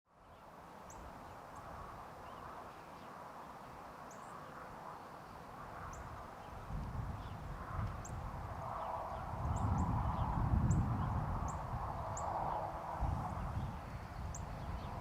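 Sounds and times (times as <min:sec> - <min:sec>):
steady background hiss: 0:00.2 - 0:06.7.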